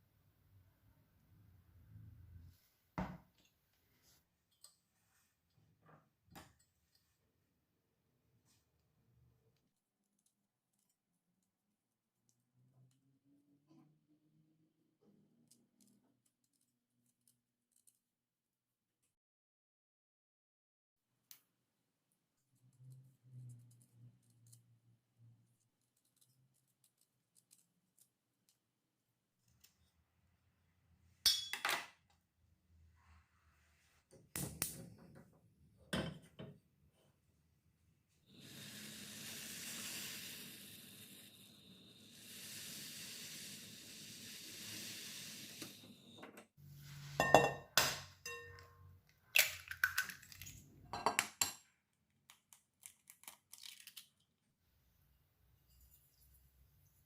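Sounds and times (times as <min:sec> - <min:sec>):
bowls and utensils clinking: 0:47.0 - 0:49.0.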